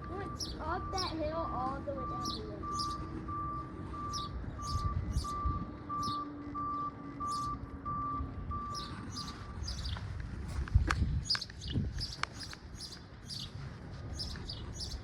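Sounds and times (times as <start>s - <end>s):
low engine rumble: 0.0s - 15.0s
reversing alarm beeping: 0.1s - 9.8s.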